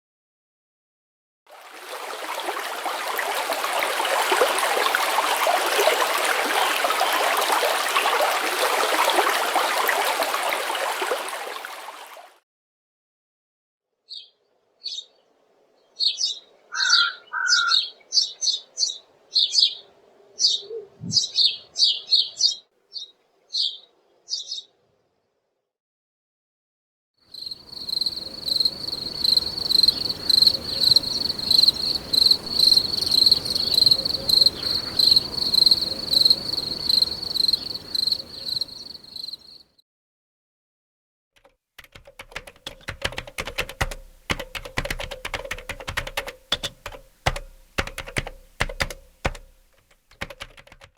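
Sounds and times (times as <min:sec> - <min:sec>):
songbirds chirping: 0:02.2 - 0:09.9, 0:14.1 - 0:25.2, 0:27.3 - 0:39.6
computer keyboard typing: 0:41.4 - 0:50.9.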